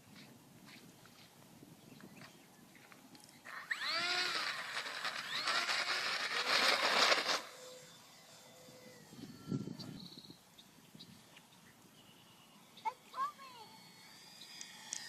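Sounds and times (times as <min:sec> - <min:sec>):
model plane motor whining past: 0:03.0 - 0:15.0.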